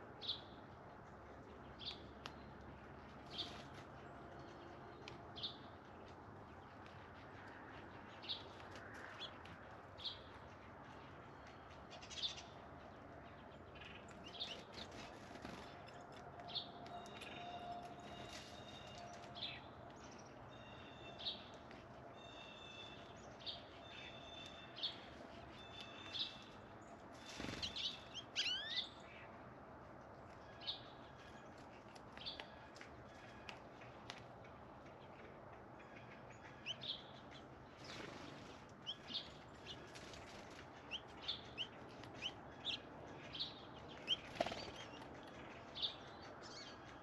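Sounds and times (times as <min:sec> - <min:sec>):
sweeping bird calls: 0:27.2 - 0:29.0.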